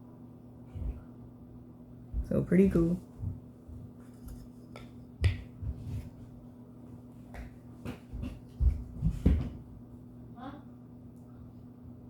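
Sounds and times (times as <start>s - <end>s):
faint low hum: 0.0s - 12.0s.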